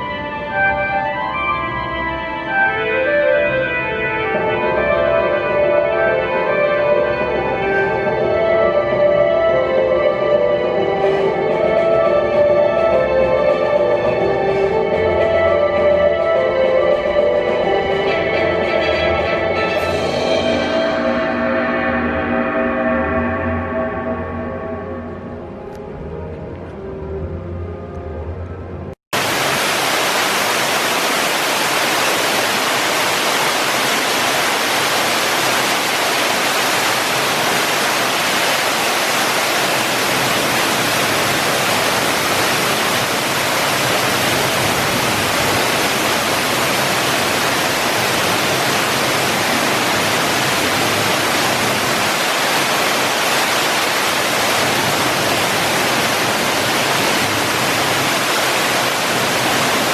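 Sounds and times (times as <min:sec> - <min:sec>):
music: 0:00.0 - 0:29.0
waterfall rushing: 0:29.1 - 0:59.9.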